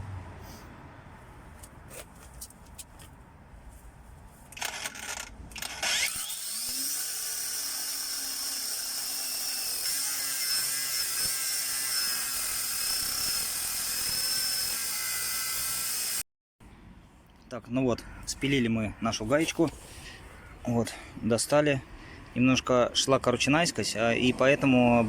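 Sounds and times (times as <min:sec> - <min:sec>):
angle grinder whining: 0:04.6 - 0:16.2
angle grinder blips: 0:05.6 - 0:16.2.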